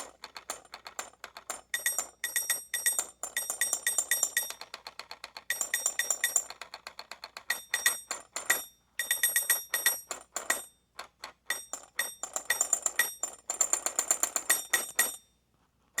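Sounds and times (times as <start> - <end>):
mechanical alarm clock ringing: 1.6 - 10.8, 11.4 - 15.3.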